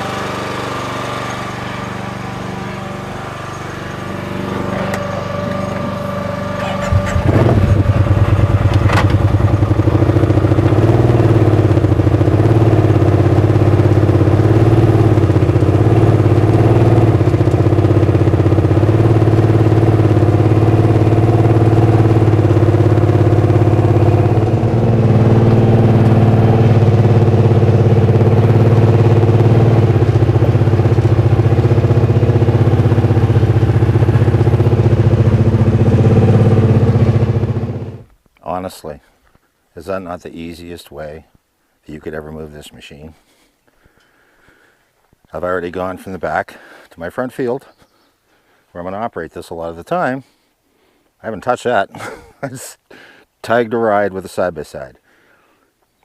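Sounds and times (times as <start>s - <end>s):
utility vehicle engine running: 0.0s - 38.1s.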